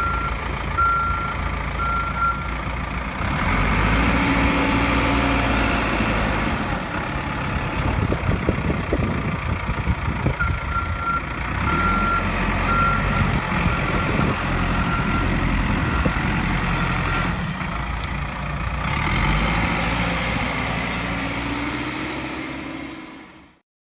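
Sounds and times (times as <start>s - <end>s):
reversing alarm beeping: 0.0s - 2.6s, 10.4s - 17.7s
diesel engine running: 0.0s - 23.6s.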